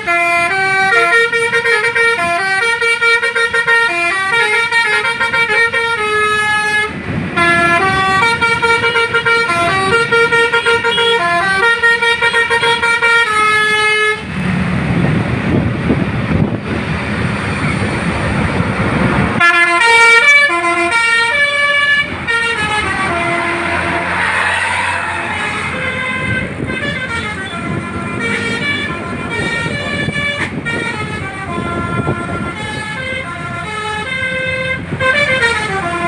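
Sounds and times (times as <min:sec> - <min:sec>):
multi-tone bus horn melody: 0:00.0 - 0:14.7, 0:19.2 - 0:36.0
loud rushing noise: 0:21.9 - 0:27.2.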